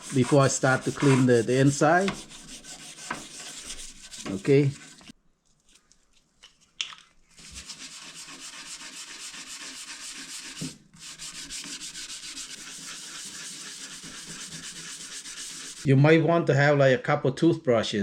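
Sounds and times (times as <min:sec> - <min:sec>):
toothbrush scrubbing metal: 0:00.0 - 0:05.2, 0:07.4 - 0:15.9.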